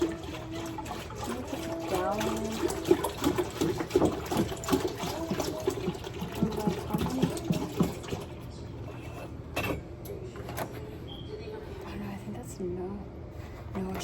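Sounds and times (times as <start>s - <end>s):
milk glugging into pot: 0.0s - 8.6s.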